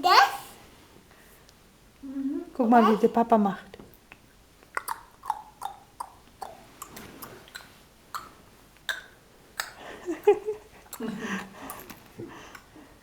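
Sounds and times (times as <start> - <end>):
tongue clicks and smacks: 4.1 - 9.8.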